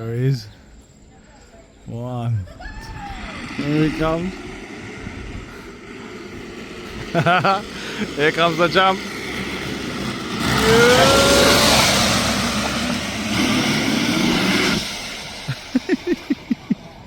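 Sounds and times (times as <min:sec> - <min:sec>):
metal rollers rumbling: 0:02.5 - 0:17.0
person shouting: 0:10.6 - 0:11.9.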